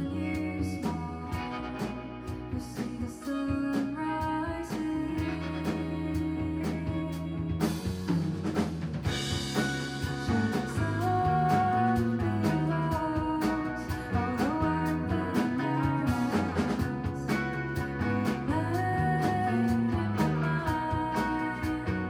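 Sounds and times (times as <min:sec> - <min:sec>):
live band music: 0:00.0 - 0:22.0
drum beat: 0:07.6 - 0:21.3.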